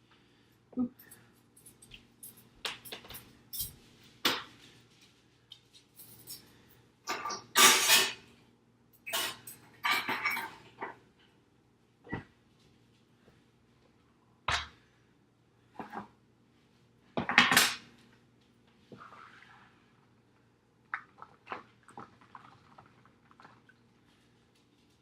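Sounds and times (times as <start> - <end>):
dishes clinking and knocking: 9.1 - 10.6.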